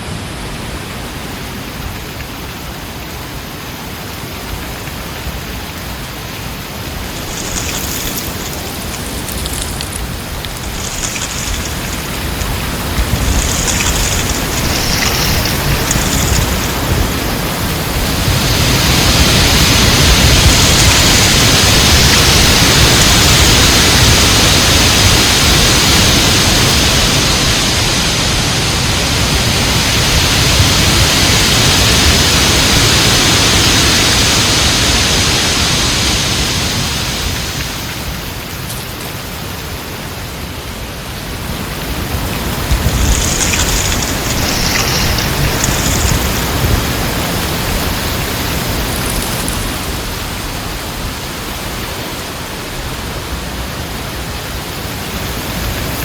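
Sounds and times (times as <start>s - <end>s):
heavy wind rushing: 6.1s - 35.2s.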